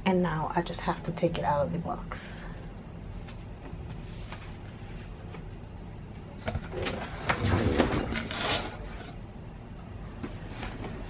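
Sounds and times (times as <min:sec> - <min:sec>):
cardboard and plastic packaging rustling: 0:06.4 - 0:09.2, 0:10.1 - 0:11.0.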